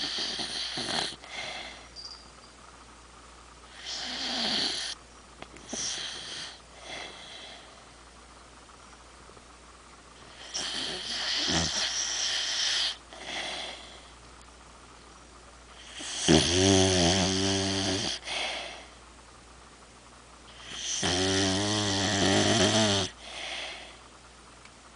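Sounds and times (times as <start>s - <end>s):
dog snoring loudly: 0.0s - 1.8s, 3.7s - 5.0s, 5.7s - 7.6s, 10.3s - 14.0s, 15.8s - 18.8s, 20.5s - 23.9s.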